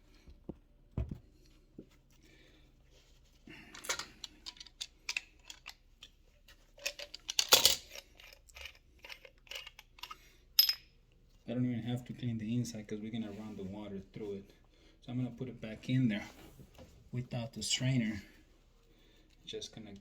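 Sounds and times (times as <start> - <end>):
hands clicking and knocking fittings: 3.7 - 6.2, 6.8 - 10.8.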